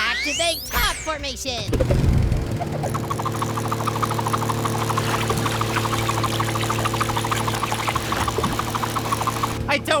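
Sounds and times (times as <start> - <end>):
mechanical hum: 1.7 - 10.0
fast rattle of ticks: 2.6 - 9.6.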